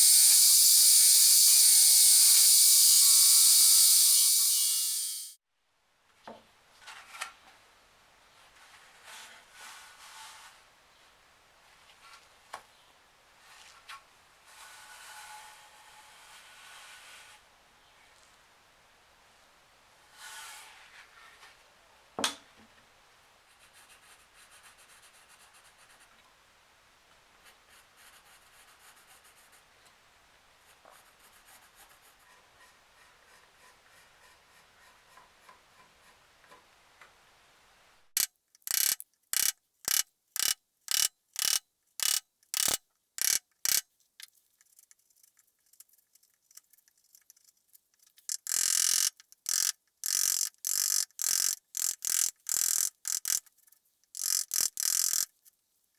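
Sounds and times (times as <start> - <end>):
hand tool scraping strokes: 0.0 - 5.4.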